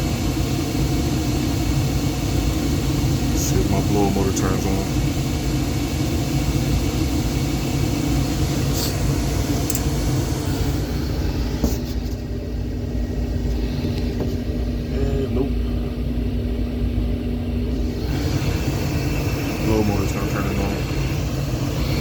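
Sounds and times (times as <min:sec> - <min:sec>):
gas furnace rumbling: 0:00.0 - 0:22.0
steady hum: 0:00.0 - 0:22.0
hiss: 0:08.6 - 0:09.1.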